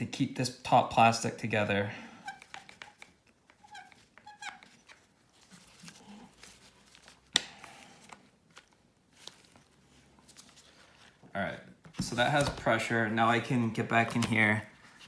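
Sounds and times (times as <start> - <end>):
clamp handling squeaks: 3.6 - 5.0.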